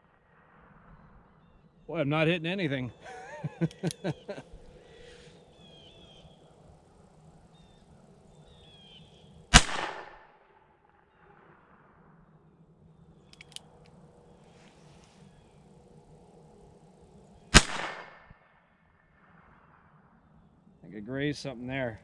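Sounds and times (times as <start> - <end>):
faint clicks: 3.4 - 5.4, 13.2 - 15.7
revolver gunshot: 9.5 - 12.3, 17.5 - 18.3.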